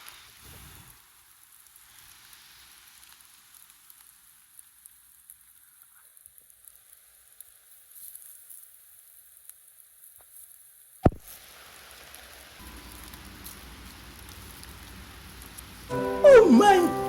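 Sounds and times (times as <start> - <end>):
campfire crackling: 0.0 - 17.0
steady hiss: 0.0 - 17.0
sharp pop: 11.0 - 11.2.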